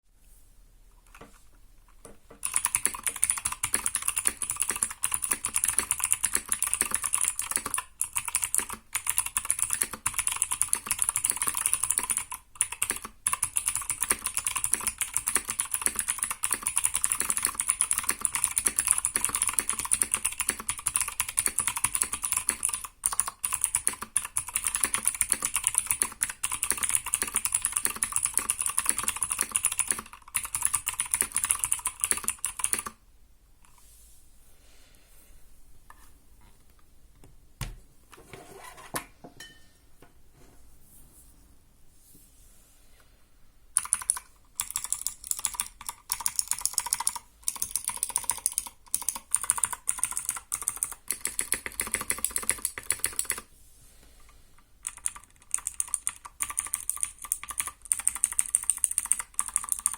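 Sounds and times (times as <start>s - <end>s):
typing on mechanical keyboard: 2.4s - 33.0s, 43.8s - 53.5s, 54.8s - 59.9s.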